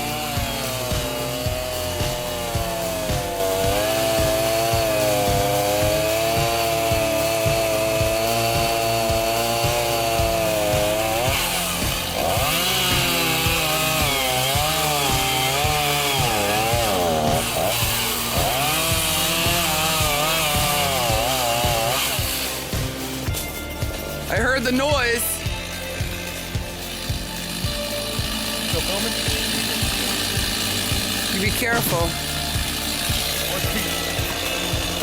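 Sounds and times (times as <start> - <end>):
chainsaw cutting wood: 0.0 - 35.0.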